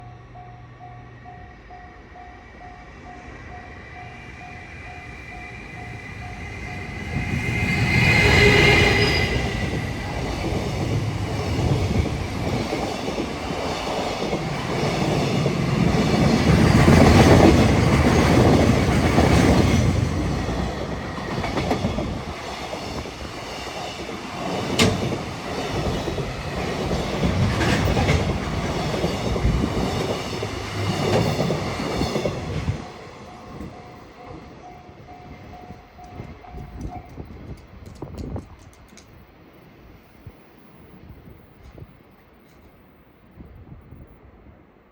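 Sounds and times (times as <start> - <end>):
freight train passing: 0.0 - 44.9
wheels clicking over rail joints: 23.7 - 32.4.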